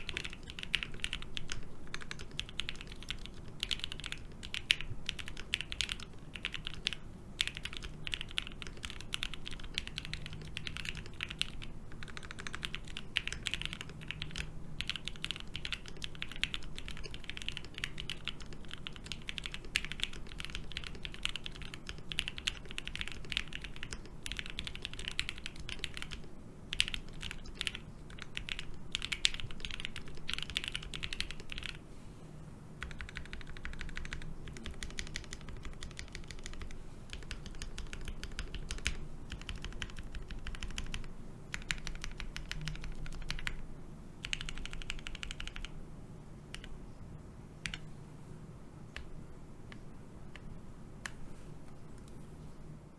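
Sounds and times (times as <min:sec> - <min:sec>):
mechanical keyboard typing: 0:00.0 - 0:31.8, 0:32.8 - 0:43.6, 0:44.2 - 0:45.8, 0:47.6 - 0:47.9.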